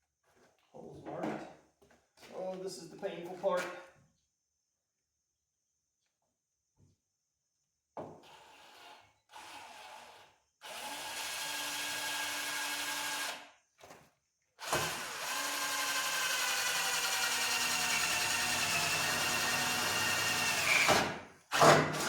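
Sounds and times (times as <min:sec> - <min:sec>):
power drill boring into sheet metal: 0:08.3 - 0:13.5, 0:14.6 - 0:22.0.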